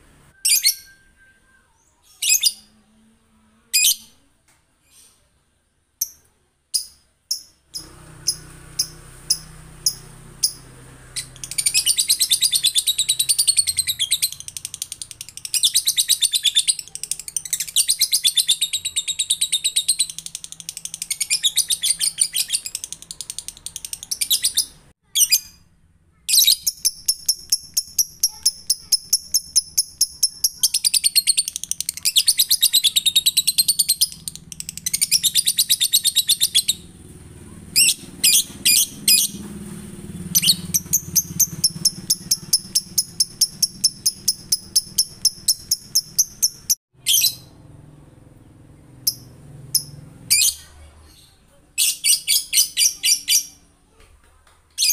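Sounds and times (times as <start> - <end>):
lovebird chirps: 0.3 - 2.9, 3.6 - 5.3, 5.9 - 25.6, 26.3 - 36.9, 40.1 - 47.6, 49.0 - 53.6
rapid chattering bird trill: 6.0 - 25.6, 26.3 - 36.9, 37.7 - 39.4, 40.1 - 47.5.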